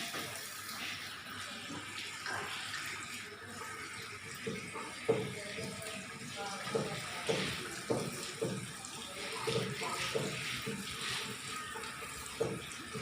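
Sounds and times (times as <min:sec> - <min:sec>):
water running and splashing: 0:00.0 - 0:13.0.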